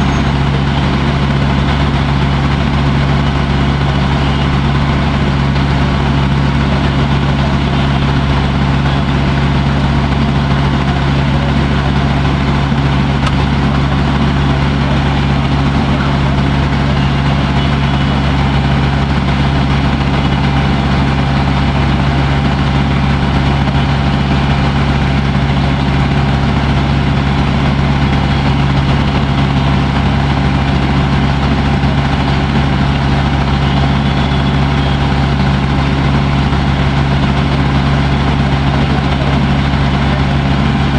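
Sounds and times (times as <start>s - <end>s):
boat engine droning: 0.0s - 40.9s.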